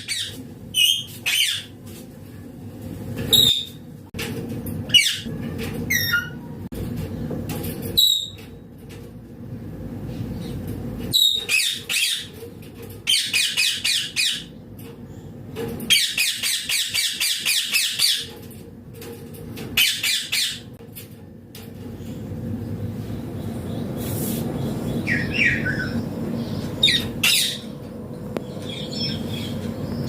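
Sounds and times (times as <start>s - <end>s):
parakeet chattering squawks: 26.8s - 27.7s.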